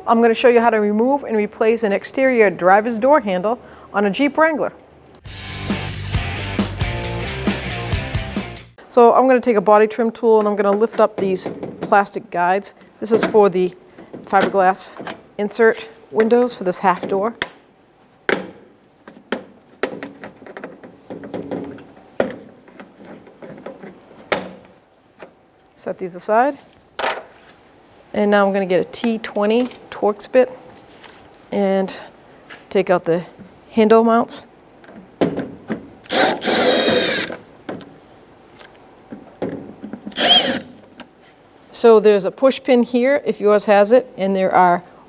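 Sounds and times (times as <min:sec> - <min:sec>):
screwdriver bit clicking: 0:36.1 - 0:37.4, 0:40.2 - 0:40.7.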